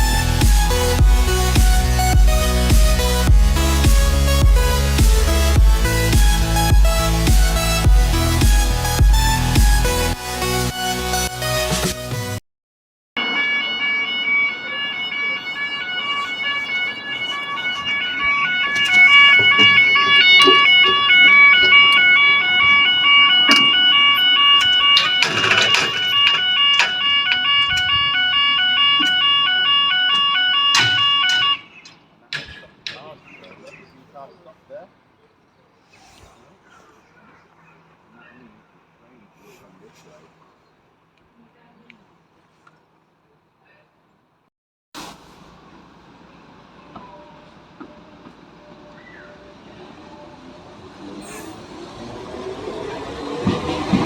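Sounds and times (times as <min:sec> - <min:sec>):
two-tone level crossing alarm: 0:13.2 - 0:32.0
electric train approaching: 0:13.2 - 0:32.2, 0:45.5 - 0:54.0.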